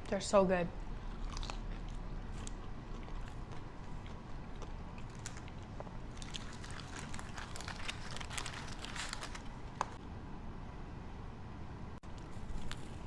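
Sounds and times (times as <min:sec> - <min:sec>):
steady low rumble: 0:00.0 - 0:12.5
person chewing crispy food: 0:00.9 - 0:10.0.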